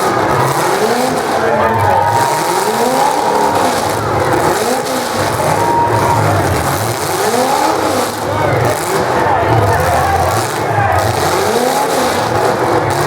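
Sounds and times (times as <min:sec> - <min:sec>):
car engines revving hard: 0:00.0 - 0:13.0
cars running on track: 0:00.0 - 0:13.0.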